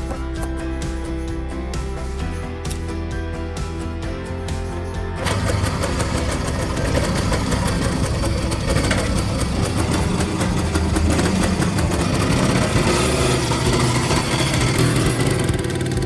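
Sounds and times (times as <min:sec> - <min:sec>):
motorcycle engine idling: 0:05.2 - 0:16.0.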